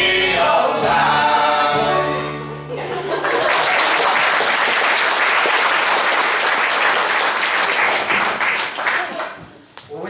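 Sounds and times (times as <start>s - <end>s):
audience applauding: 3.2s - 9.4s.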